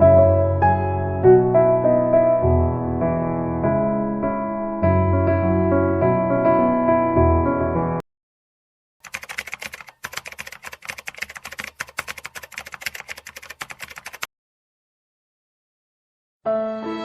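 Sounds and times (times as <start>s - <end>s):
piano phrase: 0.0s - 8.0s
computer keyboard typing: 9.0s - 14.3s.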